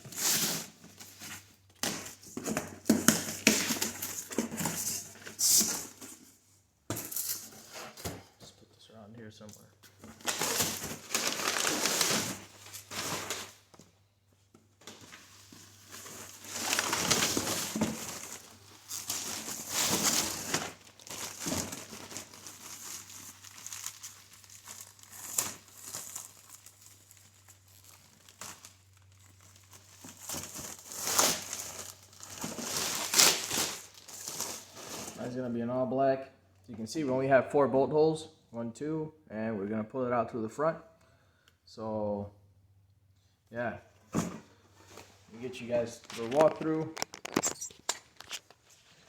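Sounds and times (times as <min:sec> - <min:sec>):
packaging wrap crinkling: 0:10.0 - 0:13.8, 0:14.8 - 0:35.2, 0:45.0 - 0:49.0.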